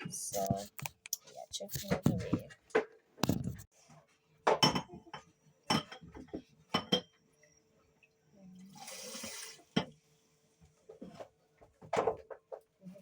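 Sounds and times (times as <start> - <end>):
dishes and utensils clinking: 4.5 - 7.2
water pouring: 8.0 - 9.8.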